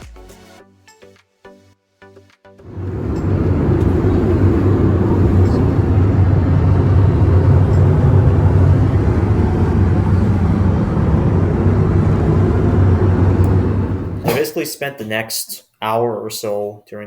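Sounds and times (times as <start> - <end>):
airliner cabin engine rumble: 2.6 - 14.6.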